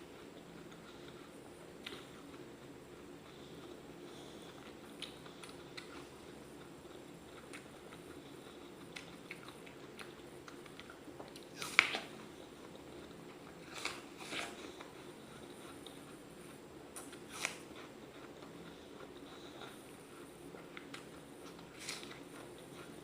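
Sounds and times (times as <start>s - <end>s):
quiet chewing: 0.0s - 23.0s
crisp apple bite crunching: 8.7s - 16.1s, 16.9s - 19.8s, 20.7s - 23.0s.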